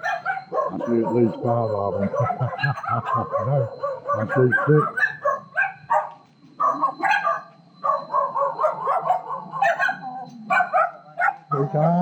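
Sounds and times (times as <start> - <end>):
dogs barking: 0.0 - 12.0.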